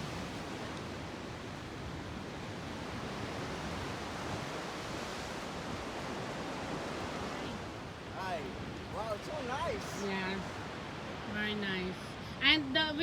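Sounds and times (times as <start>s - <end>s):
waves washing into rocky cove: 2.8s - 11.3s.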